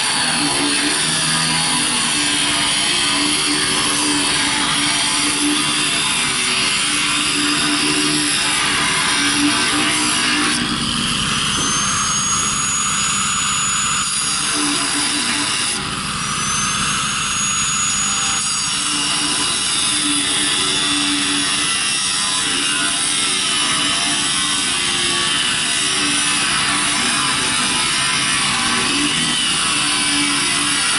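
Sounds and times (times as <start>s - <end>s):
angle grinder cutting steel: 0.0s - 30.9s.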